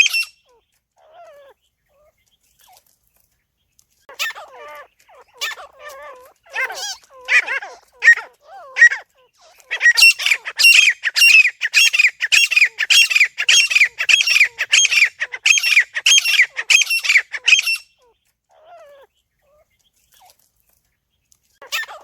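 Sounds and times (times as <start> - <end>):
francolin harsh calls: 0.0 - 0.5, 4.1 - 18.9.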